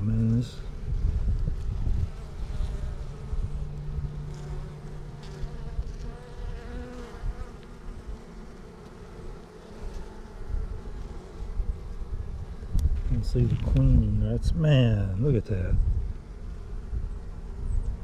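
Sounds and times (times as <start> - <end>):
bees humming: 0.0 - 13.4
single bees buzzing past: 0.2 - 14.0, 15.7 - 18.0.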